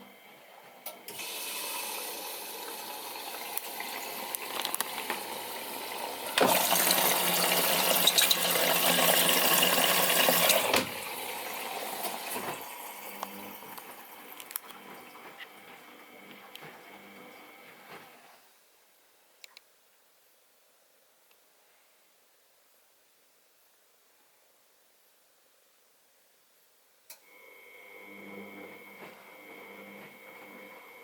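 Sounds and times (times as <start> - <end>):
washing machine water inlet rushing: 1.1 - 13.7.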